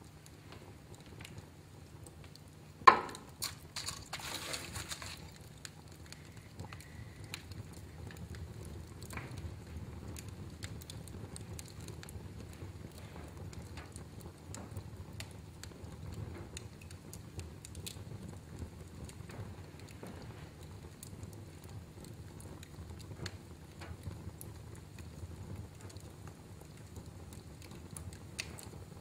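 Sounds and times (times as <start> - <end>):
wood fire crackling: 0.0 - 29.0
loud pop from fire: 2.8 - 5.3
faint whistle: 6.2 - 7.3.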